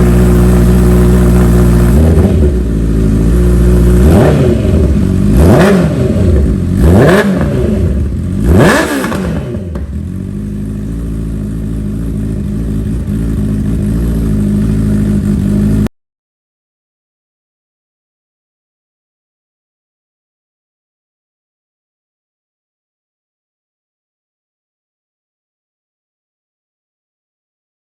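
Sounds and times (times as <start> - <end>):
motorcycle engine revving and idling: 0.0 - 15.9.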